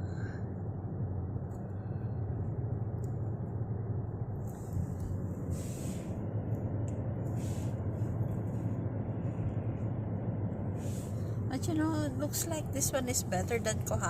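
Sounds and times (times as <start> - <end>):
car engine and tyre rumble: 0.0 - 14.0
brief hissing: 5.5 - 6.1.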